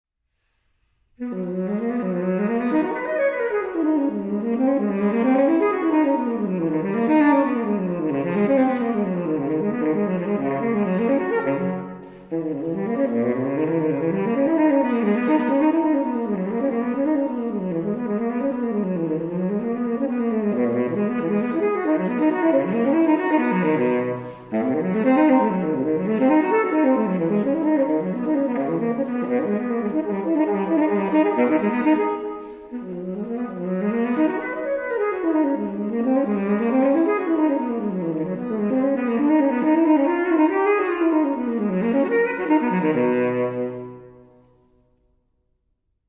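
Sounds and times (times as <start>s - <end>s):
tenor saxophone solo: 1.1s - 44.7s.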